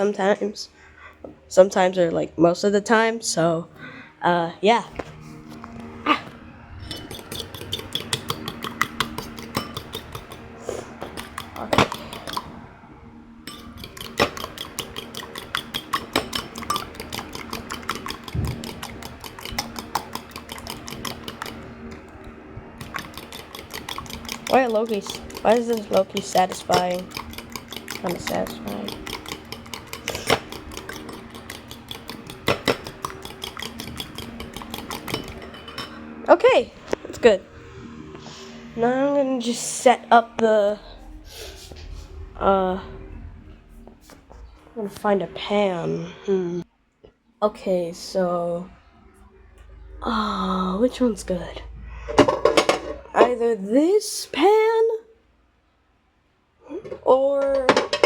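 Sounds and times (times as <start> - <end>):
utensil beating eggs in bowl: 6.9 - 12.6, 13.5 - 36.1.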